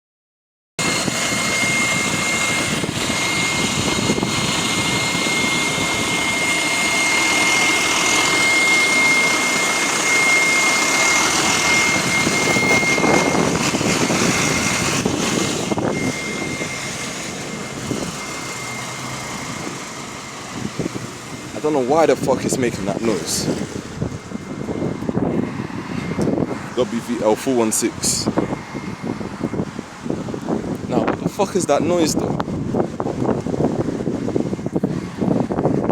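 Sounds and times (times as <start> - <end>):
bus engine and road noise: 0.8 - 35.9
high-pitched whine: 0.8 - 35.9.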